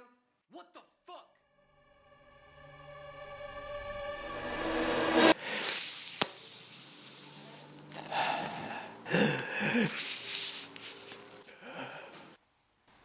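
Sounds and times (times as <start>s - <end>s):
person gasping and wheezing: 5.4s - 5.8s, 7.9s - 12.4s
rubbing and rustling: 9.8s - 13.0s.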